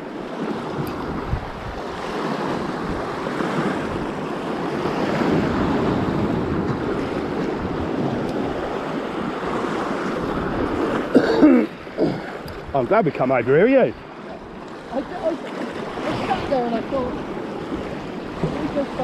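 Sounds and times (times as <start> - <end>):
wind on microphone: 0.0 - 11.1, 11.7 - 13.0, 14.3 - 19.0
sea surf on shore: 0.0 - 19.0.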